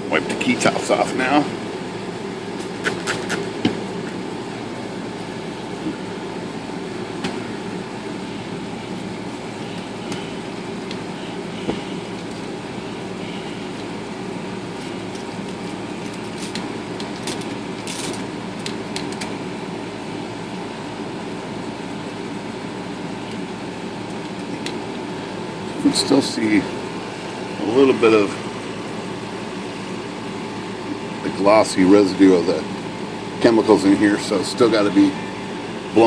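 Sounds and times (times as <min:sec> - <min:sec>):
machine drone: 0:00.0 - 0:19.9.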